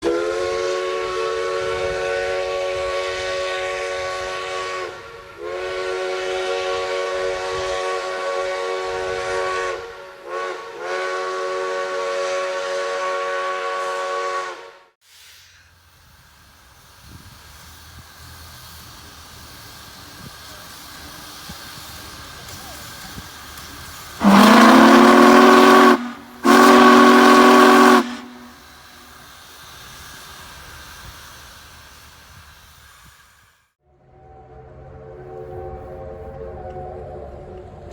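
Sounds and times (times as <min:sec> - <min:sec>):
train whistle chord blasts: 0:00.0 - 0:15.0, 0:24.2 - 0:29.1.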